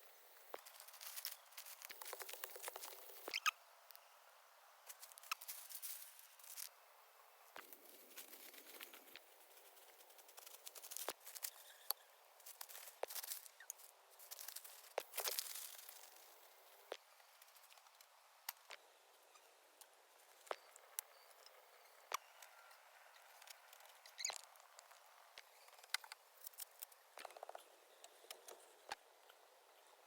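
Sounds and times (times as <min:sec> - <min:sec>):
rustling and crackling materials: 0:00.4 - 0:03.5, 0:04.8 - 0:06.8, 0:07.5 - 0:18.8.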